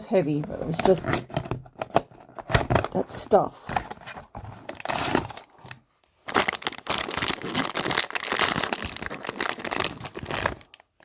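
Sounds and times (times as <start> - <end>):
packaging crinkling: 3.7 - 11.0.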